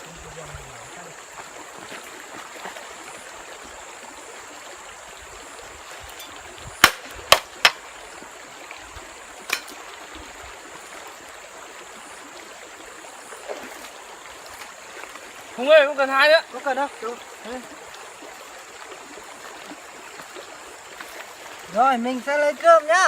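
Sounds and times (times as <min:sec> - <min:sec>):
forest stream running: 0:00.0 - 0:23.0
sharp knocks: 0:06.8 - 0:07.8.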